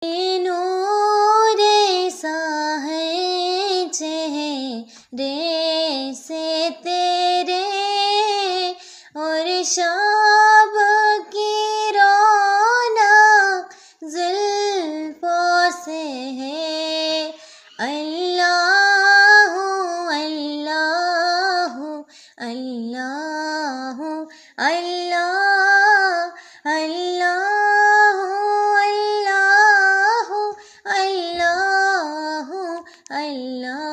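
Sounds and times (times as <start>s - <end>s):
person singing devotional song: 0.0s - 33.9s
breaths: 4.8s - 5.2s, 8.8s - 9.2s, 13.7s - 14.0s, 17.3s - 17.8s, 22.0s - 22.4s, 24.2s - 24.6s, 26.3s - 26.7s, 30.5s - 30.9s, 32.8s - 33.1s.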